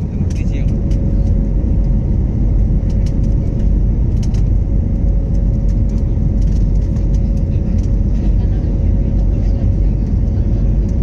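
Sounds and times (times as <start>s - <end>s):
deep jet cabin rumble: 0.0s - 11.0s.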